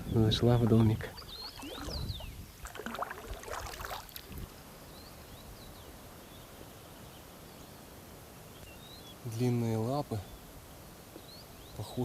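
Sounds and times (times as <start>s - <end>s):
high bird chirps: 0.0s - 3.4s
paddle splashing water: 0.6s - 4.5s.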